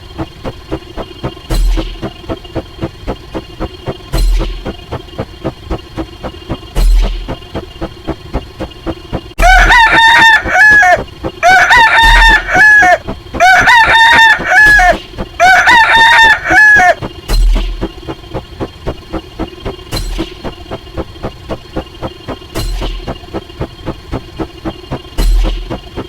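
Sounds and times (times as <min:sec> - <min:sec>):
rooster crowing: 0:09.4 - 0:17.0.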